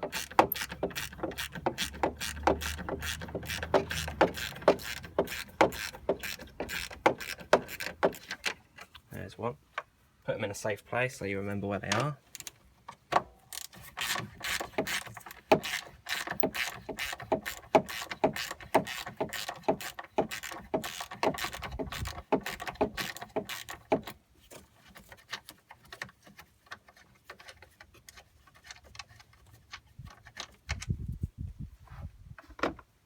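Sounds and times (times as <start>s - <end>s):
ratchet clicking: 0.0s - 8.4s, 13.6s - 23.8s.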